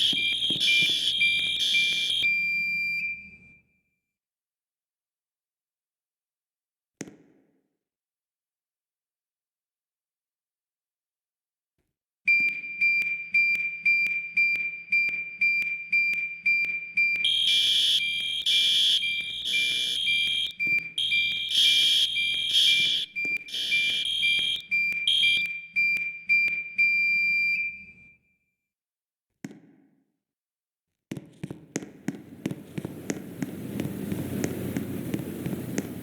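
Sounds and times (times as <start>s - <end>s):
louder alarm in short bursts: 0.0s - 3.8s, 12.3s - 28.3s
fire alarm high tone: 0.0s - 3.9s, 12.3s - 28.4s.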